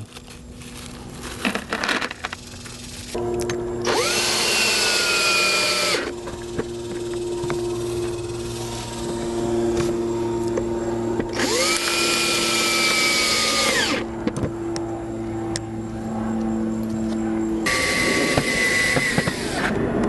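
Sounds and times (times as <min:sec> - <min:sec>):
steady low hum: 0:00.0 - 0:20.0
power drill whining: 0:02.4 - 0:14.1, 0:17.6 - 0:19.8.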